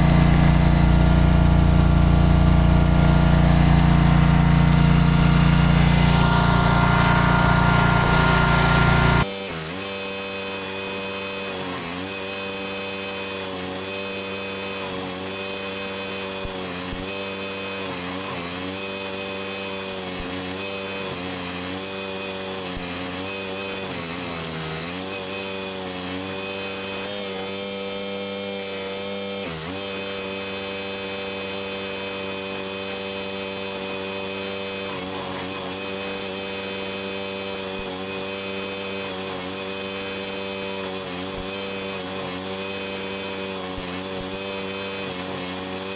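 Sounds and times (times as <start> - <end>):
stump grinder engine running: 0.0 - 45.9.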